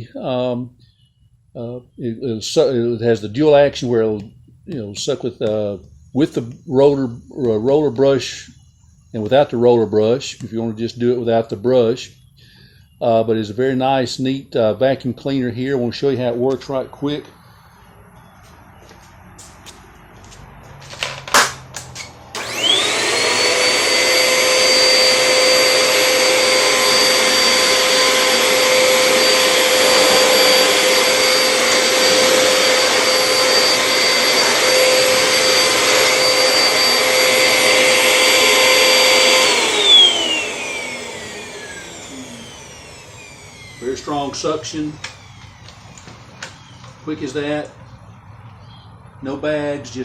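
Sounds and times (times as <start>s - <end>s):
vacuum cleaner motor whine: 21.4s - 47.8s
vacuum suction hiss: 22.4s - 46.3s.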